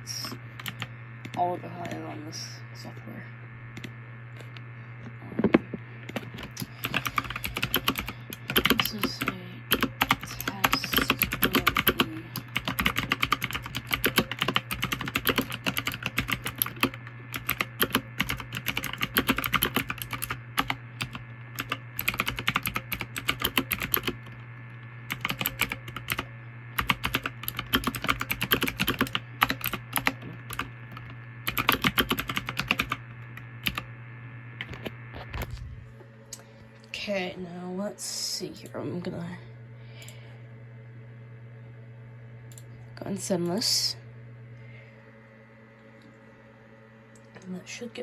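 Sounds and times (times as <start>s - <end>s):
steady low hum: 0.0s - 48.0s
typing on computer keyboard: 0.6s - 2.0s, 6.1s - 24.4s, 25.1s - 33.0s, 33.6s - 33.8s.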